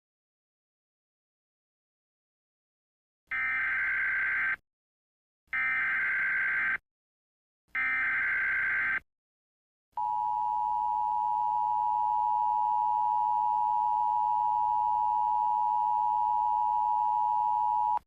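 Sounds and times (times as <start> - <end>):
two-tone alarm: 5.6 - 6.8, 7.8 - 9.0, 10.0 - 18.0.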